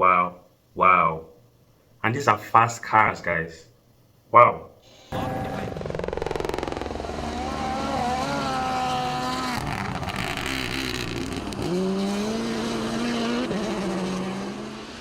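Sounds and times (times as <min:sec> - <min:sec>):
car engine accelerating: 0:05.0 - 0:15.0.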